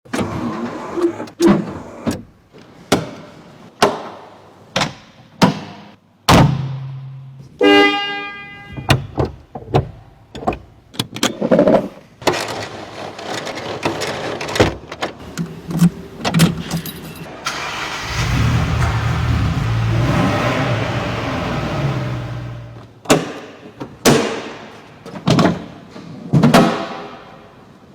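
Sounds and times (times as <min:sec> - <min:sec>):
horn-like tone: 0:07.6 - 0:08.9
car engine starting and running: 0:17.3 - 0:22.9.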